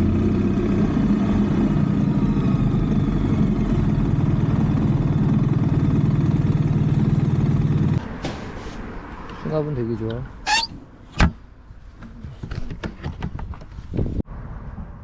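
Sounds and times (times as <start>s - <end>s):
motorcycle engine running: 3.8s - 8.0s.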